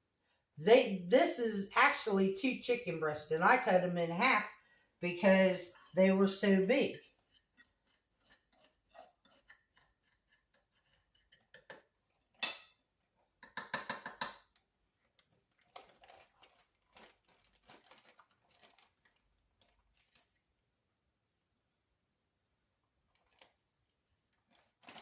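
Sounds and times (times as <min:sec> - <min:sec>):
dishes and utensils clinking: 0:11.2 - 0:12.8.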